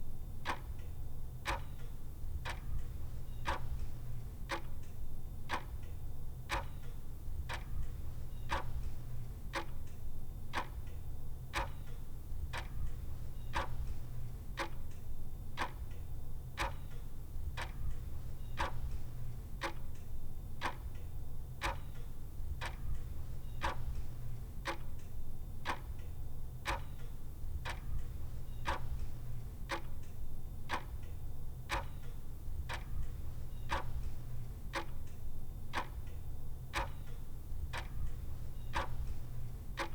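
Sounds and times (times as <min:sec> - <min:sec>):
mechanical clock ticking: 0:00.4 - 0:03.9, 0:04.5 - 0:15.0, 0:15.6 - 0:16.0, 0:16.6 - 0:39.9.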